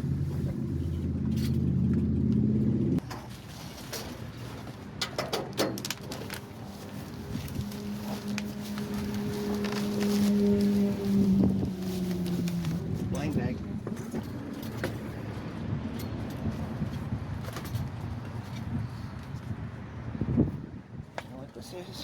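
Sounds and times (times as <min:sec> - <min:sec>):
rustling: 0:05.7 - 0:13.0.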